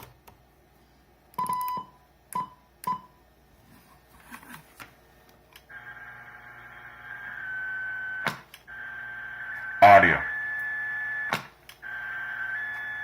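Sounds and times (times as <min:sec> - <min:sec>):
steady buzzing hum: 0:05.7 - 0:13.0.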